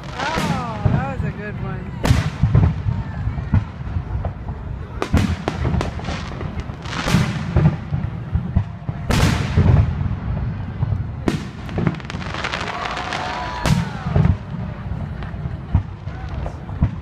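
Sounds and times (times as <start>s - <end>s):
fireworks crackle: 0.0s - 17.0s.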